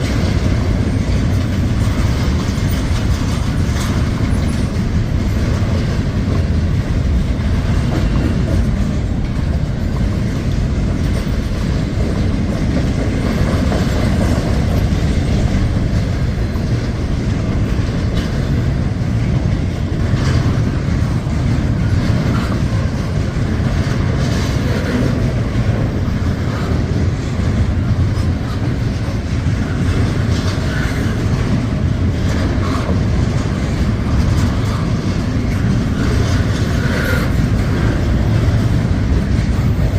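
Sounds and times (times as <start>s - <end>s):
clacks over rail joints: 0.0s - 39.9s
train wheels rumbling on rail: 0.0s - 39.9s.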